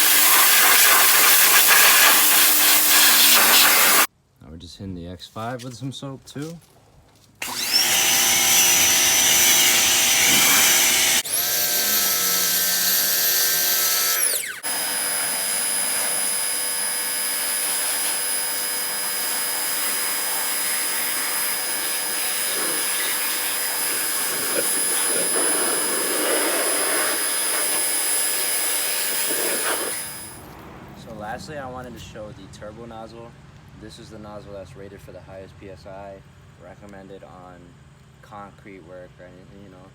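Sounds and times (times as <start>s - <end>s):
pressure washer motor whine: 0.0s - 4.1s, 7.4s - 30.6s
spray hissing: 0.0s - 4.1s, 20.3s - 30.5s.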